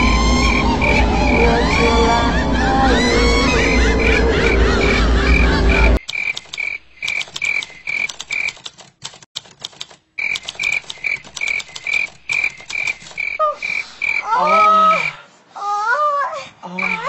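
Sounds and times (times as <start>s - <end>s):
gliding moan-like sound: 0.0s - 6.0s
rhythmic high-pitched call: 0.0s - 8.5s, 10.2s - 15.1s
sharp clicks: 6.0s - 14.2s.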